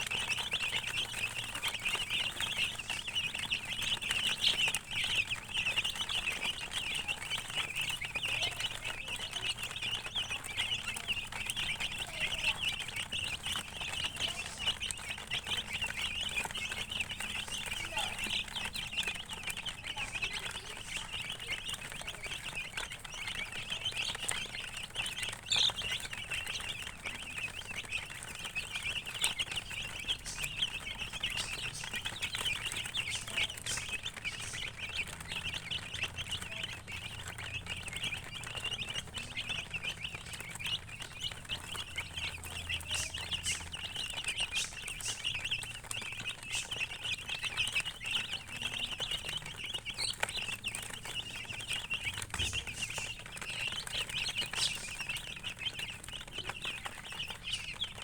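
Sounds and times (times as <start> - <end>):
baby chicks peeping: 0.0 - 58.0.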